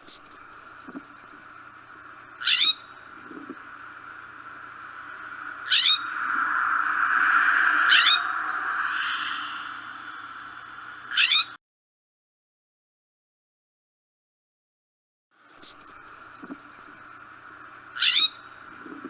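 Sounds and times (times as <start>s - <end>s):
steady hiss: 0.0s - 11.2s, 15.5s - 19.0s
jay harsh rising calls: 4.2s - 11.6s.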